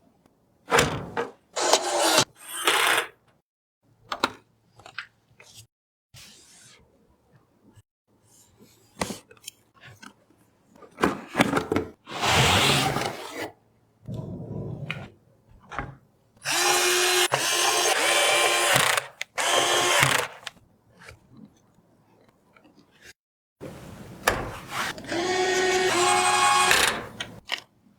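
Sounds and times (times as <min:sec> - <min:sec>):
electric screwdriver motor: 0:01.6 - 0:03.0, 0:16.4 - 0:20.5, 0:25.0 - 0:27.1.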